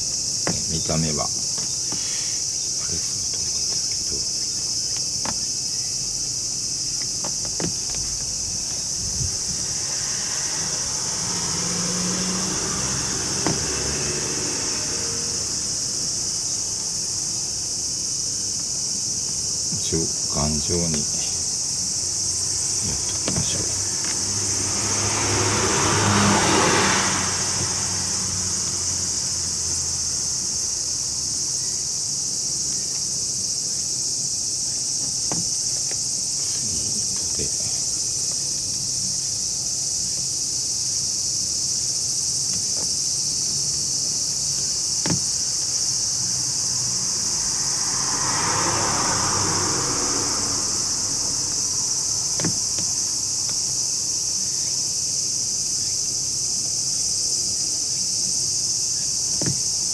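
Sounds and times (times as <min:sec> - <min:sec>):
insects droning: 0:00.0 - 0:59.9.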